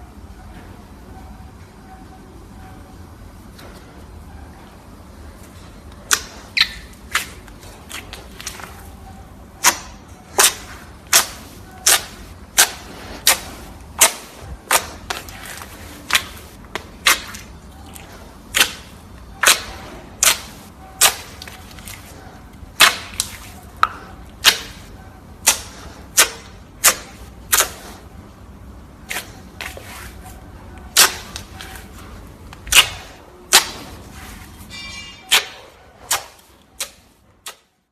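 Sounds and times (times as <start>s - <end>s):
slime squishing by hand: 5.9s - 9.0s, 9.6s - 28.1s, 29.0s - 37.7s.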